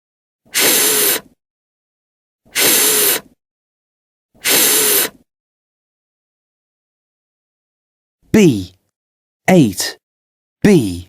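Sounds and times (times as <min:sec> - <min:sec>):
person hissing f sound: 0:00.5 - 0:01.4, 0:02.5 - 0:03.4, 0:04.4 - 0:05.2.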